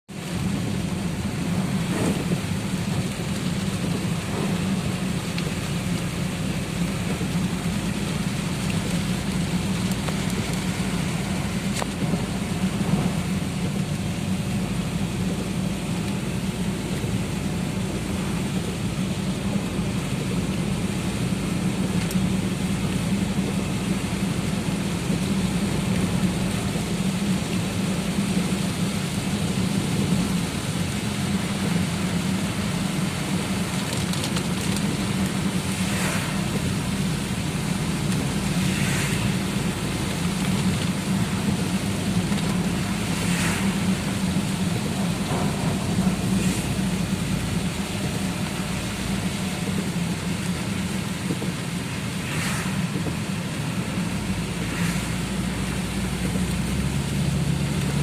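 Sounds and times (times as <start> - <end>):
heavy rain falling: 0.1 - 58.0
low rumble: 0.2 - 58.0.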